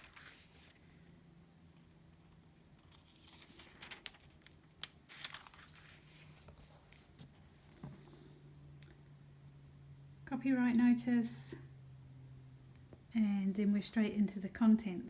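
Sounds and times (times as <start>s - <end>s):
paper pages turning: 0.0s - 0.8s, 1.8s - 7.4s.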